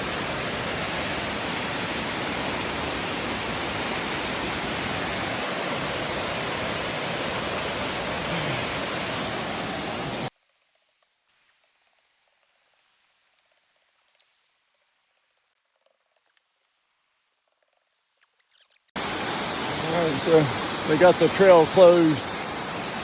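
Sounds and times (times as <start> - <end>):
waterfall roaring: 0.0 - 10.3, 19.0 - 23.0.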